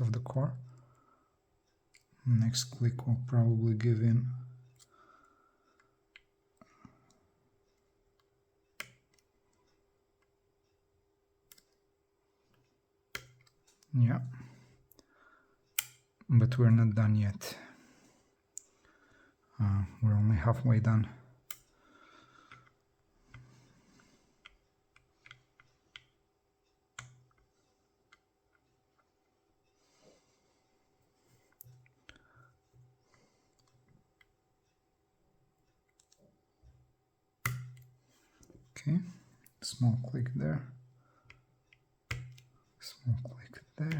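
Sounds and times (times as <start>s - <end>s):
lock picking metallic clicks: 15.8s - 16.0s, 37.4s - 38.0s.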